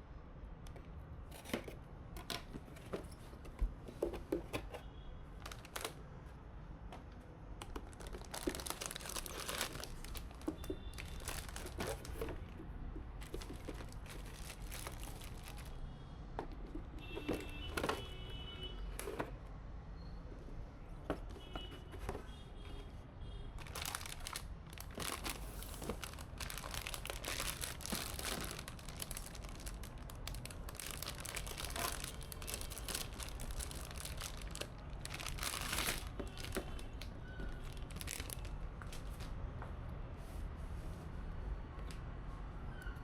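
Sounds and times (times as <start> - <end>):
packaging crinkling and rustling: 5.4 - 6.0, 7.6 - 15.8, 16.4 - 18.4, 23.6 - 39.4.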